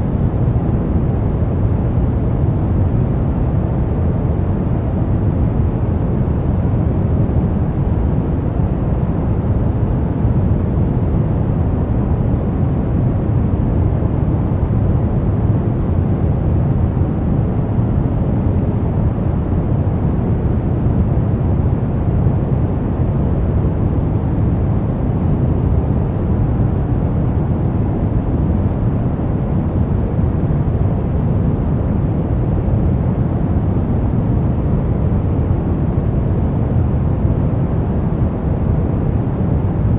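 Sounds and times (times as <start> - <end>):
brown noise: 0.0 - 39.9.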